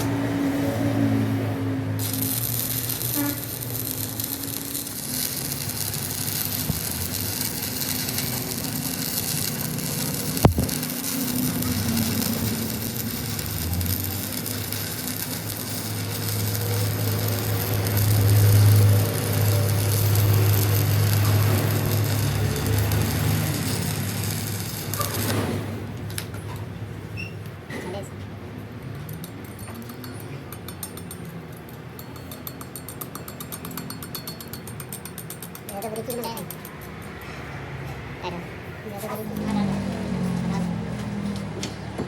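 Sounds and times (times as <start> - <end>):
machine humming: 2.0 - 26.0.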